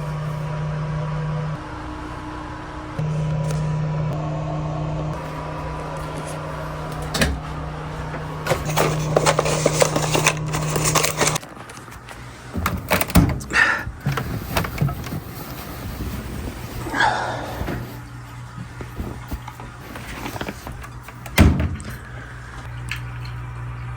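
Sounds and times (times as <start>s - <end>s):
low mechanical hum: 0.0s - 23.9s
rustling: 13.9s - 21.2s.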